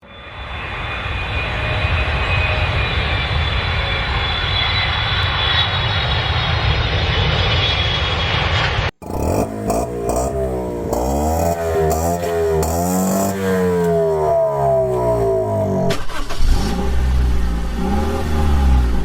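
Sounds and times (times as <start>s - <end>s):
faint high whine: 0.1s - 5.8s.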